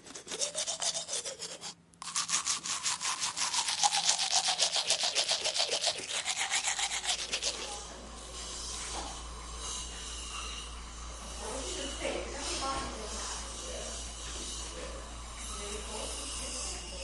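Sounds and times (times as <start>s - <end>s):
fast rhythmic scrubbing strokes: 0.0s - 7.9s.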